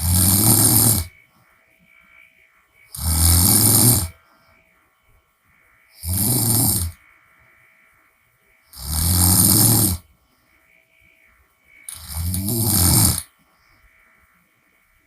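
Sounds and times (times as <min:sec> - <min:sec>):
woman snoring loudly: 0:00.0 - 0:01.2, 0:02.9 - 0:04.2, 0:06.0 - 0:07.0, 0:08.7 - 0:10.0, 0:11.9 - 0:13.3.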